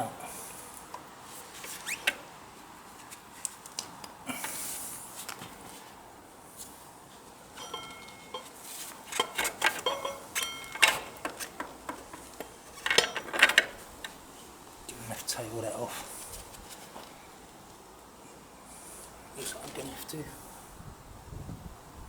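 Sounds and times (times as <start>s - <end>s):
metal tools clinking: 7.6s - 13.8s.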